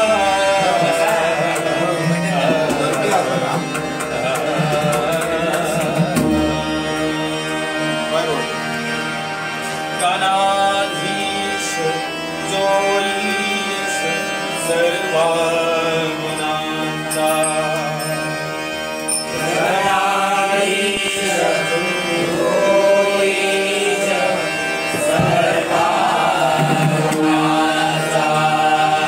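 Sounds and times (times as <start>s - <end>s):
person singing devotional melody: 0.0s - 29.0s
sustained instrumental accompaniment: 0.0s - 29.0s
light percussion: 0.7s - 7.2s.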